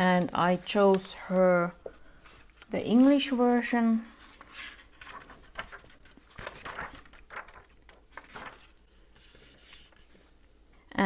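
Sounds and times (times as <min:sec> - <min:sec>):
diary pages turning: 0:00.0 - 0:10.4.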